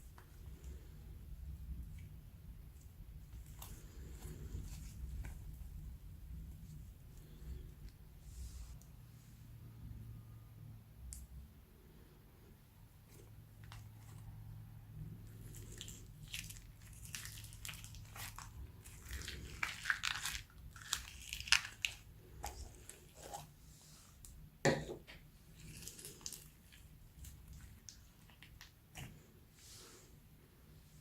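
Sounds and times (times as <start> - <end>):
slime squished by hand: 15.4 - 23.5.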